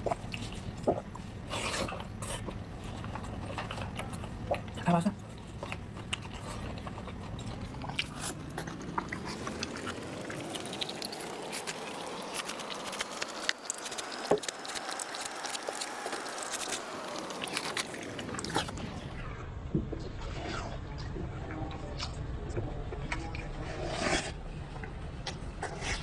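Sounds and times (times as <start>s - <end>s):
person chewing crunchy food: 0.0s - 19.0s.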